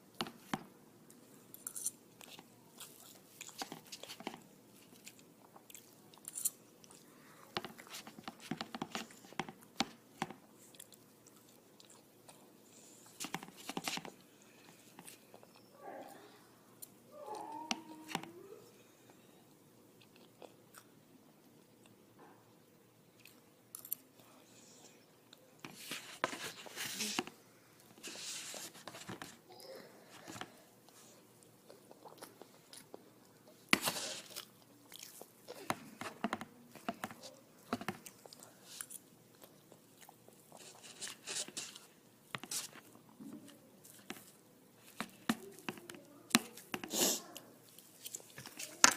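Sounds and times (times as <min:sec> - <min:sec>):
chewing and biting food: 0:30.9 - 0:33.5.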